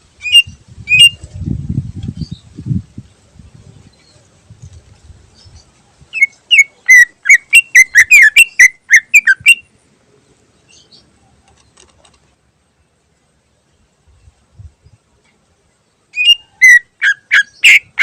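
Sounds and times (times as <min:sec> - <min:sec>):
bird singing whistled notes: 0:00.2 - 0:01.3, 0:02.0 - 0:02.6, 0:05.3 - 0:09.7, 0:16.1 - 0:18.0.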